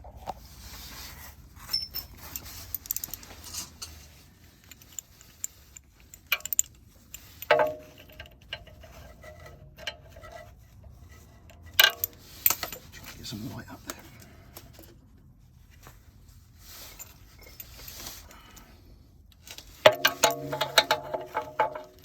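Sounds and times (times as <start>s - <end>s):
hand tools clicking on metal bolt: 19.8s - 22.0s
ringing metal clink: 19.9s - 22.0s.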